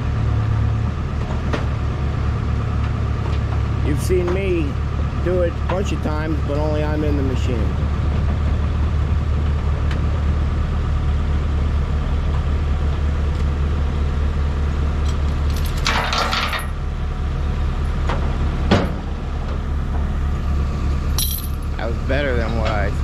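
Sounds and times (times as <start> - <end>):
heavy machine engine humming: 0.0 - 23.0
metallic clanking and scraping: 15.4 - 16.8.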